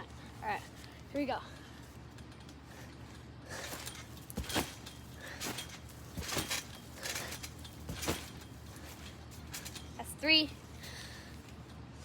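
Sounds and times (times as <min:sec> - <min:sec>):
clothing rustles: 0:03.5 - 0:11.6
landing thumps: 0:03.6 - 0:09.9.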